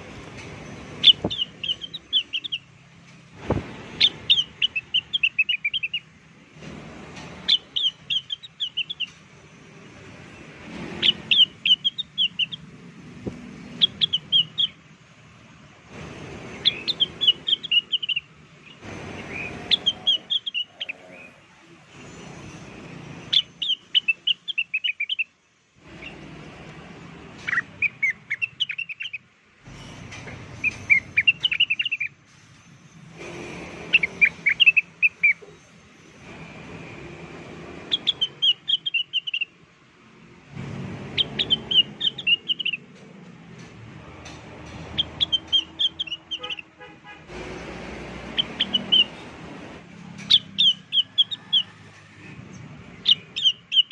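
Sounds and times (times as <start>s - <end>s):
bird rapid high chirping: 0.9s - 2.7s, 3.9s - 6.2s, 7.4s - 9.2s, 10.3s - 12.8s, 13.5s - 14.9s, 16.4s - 21.4s, 23.2s - 26.4s, 27.4s - 29.3s, 30.6s - 32.2s, 33.9s - 36.3s, 37.8s - 39.6s, 41.1s - 42.9s, 44.9s - 46.8s, 47.6s - 49.4s, 50.3s - 51.8s, 52.5s - 53.9s.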